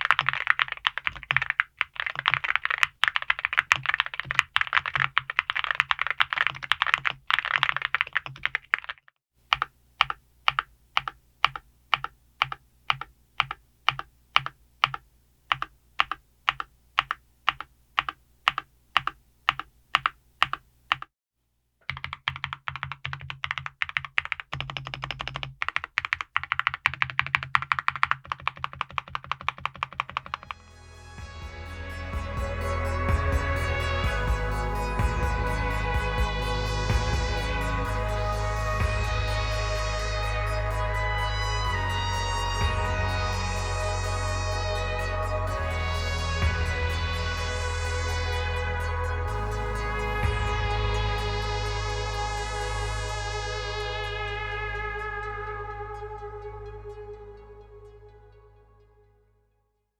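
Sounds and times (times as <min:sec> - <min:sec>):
mechanical keyboard typing: 0:00.0 - 0:21.1, 0:21.8 - 0:30.6
music: 0:30.5 - 0:59.8.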